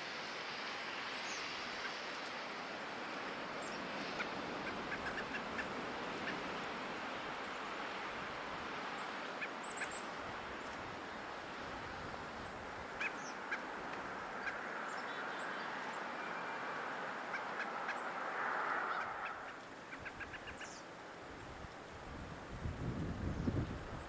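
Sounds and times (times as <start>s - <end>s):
steady hiss: 0.0s - 24.0s
small birds chirping: 8.9s - 18.3s, 18.9s - 21.0s.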